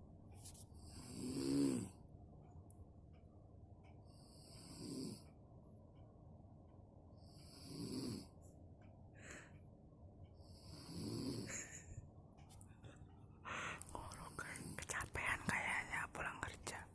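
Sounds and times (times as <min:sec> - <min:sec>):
woman snoring: 0:00.8 - 0:02.0, 0:04.2 - 0:05.3, 0:07.4 - 0:08.3, 0:10.5 - 0:11.7, 0:14.2 - 0:14.8.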